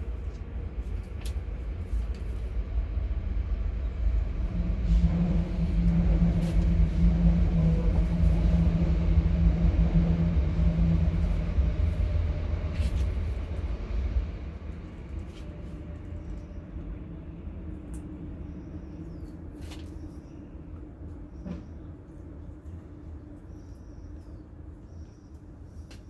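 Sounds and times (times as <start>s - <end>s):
passing vehicle rumble: 2.5s - 15.9s.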